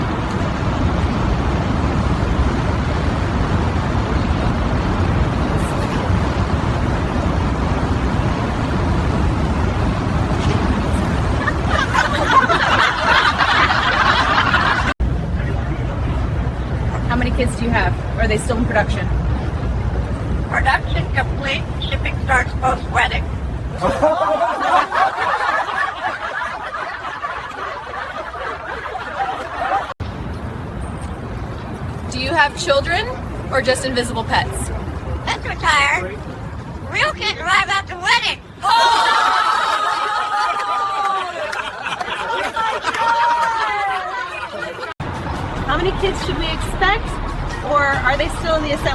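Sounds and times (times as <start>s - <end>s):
road traffic rumbling: 0.0s - 48.9s
people laughing: 10.8s - 15.0s, 23.7s - 30.0s, 38.6s - 45.0s.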